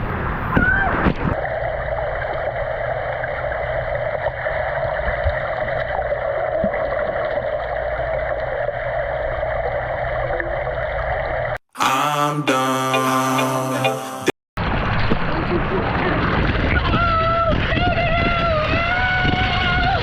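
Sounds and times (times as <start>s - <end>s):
rushing gurgling pool water: 0.0s - 11.6s.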